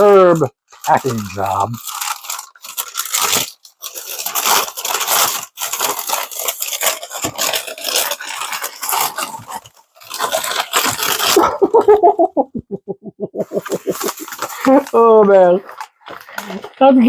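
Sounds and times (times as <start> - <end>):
packing material crinkling: 0.0 - 12.3, 13.4 - 16.8.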